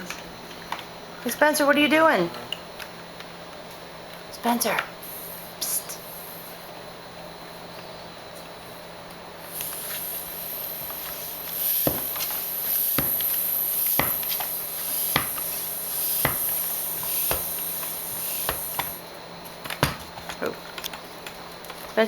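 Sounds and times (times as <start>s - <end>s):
hand pump air hiss: 4.4s - 6.8s, 9.4s - 19.1s.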